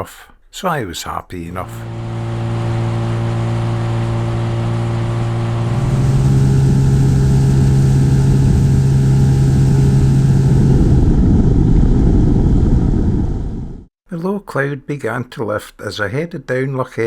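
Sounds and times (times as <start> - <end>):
outboard motor running: 1.6 - 11.9.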